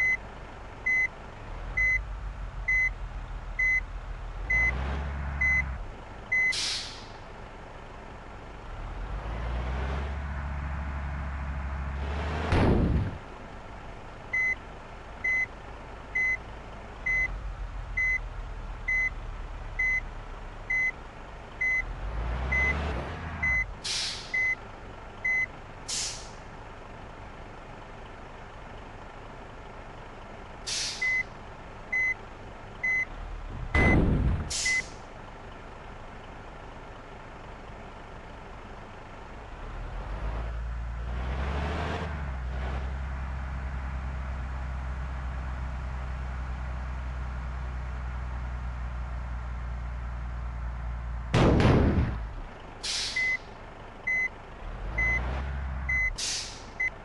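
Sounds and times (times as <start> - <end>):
engine revving: 4.4 - 5.8, 8.7 - 13.2, 21.7 - 23.7, 39.6 - 44.4, 54.1 - 56.1
air brakes hissing: 6.4 - 7.2, 23.8 - 24.5, 25.8 - 26.4, 30.6 - 31.3, 34.5 - 35.0, 52.8 - 53.5, 56.1 - 56.8.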